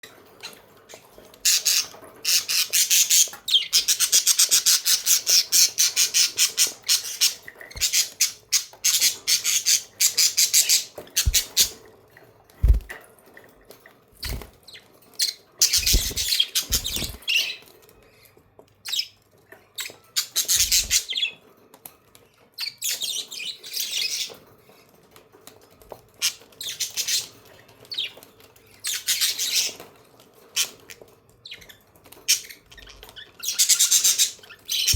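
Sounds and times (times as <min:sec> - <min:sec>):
budgies chirping and chattering: 0:00.5 - 0:11.8, 0:12.6 - 0:12.9, 0:14.2 - 0:17.6, 0:19.8 - 0:21.4, 0:22.6 - 0:24.4, 0:26.2 - 0:28.2, 0:28.8 - 0:34.9
soft low thumps: 0:11.3 - 0:11.6, 0:12.6 - 0:12.9.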